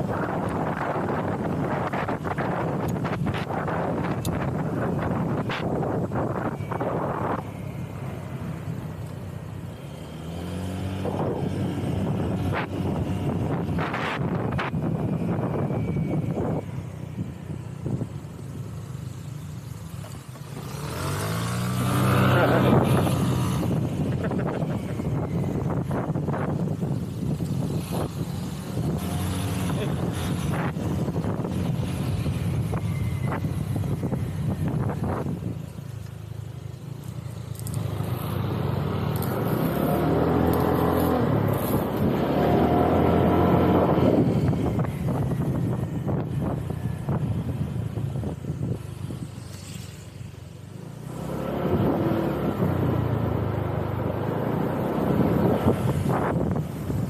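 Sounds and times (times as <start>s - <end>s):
road and wind noise: 0.0s - 57.0s
vehicle engine revving: 9.8s - 15.3s, 20.6s - 35.3s, 37.5s - 47.2s, 50.9s - 57.0s.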